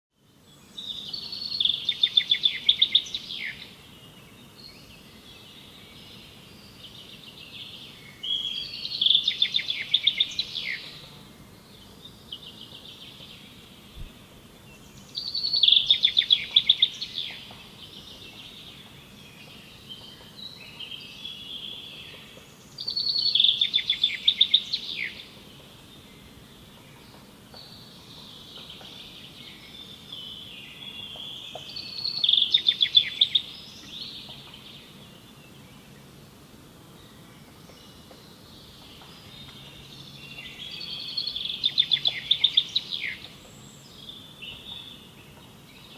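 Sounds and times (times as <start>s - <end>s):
bird chirps: 37.5s - 45.9s.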